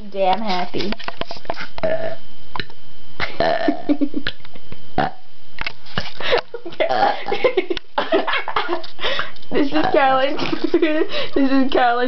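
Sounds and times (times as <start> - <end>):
woman burping: 1.8 - 2.2, 3.2 - 4.4, 5.0 - 5.3, 6.7 - 7.6, 9.7 - 11.0.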